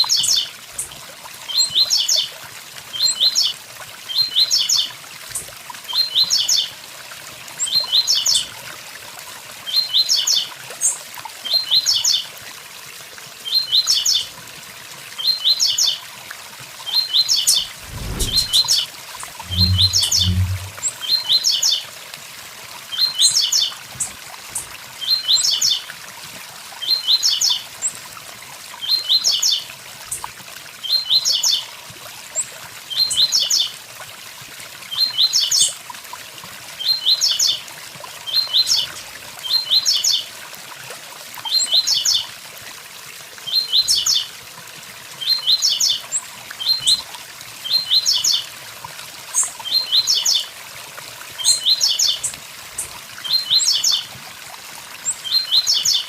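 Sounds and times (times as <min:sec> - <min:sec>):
waterfall rushing: 0:17.5 - 0:20.9
low thump: 0:17.7 - 0:18.8, 0:19.4 - 0:20.8
short low hums: 0:17.7 - 0:20.9
bird singing high notes: 0:19.4 - 0:20.9.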